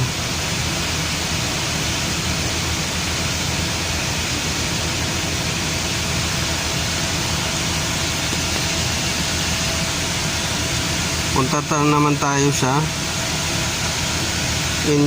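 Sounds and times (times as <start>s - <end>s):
car engine idling: 0.0s - 15.0s
constant rushing hiss: 0.0s - 15.0s.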